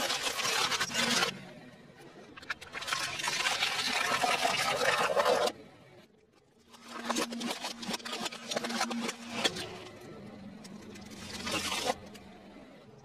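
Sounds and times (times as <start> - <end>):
objects crackling under a tyre: 0.0 - 1.4.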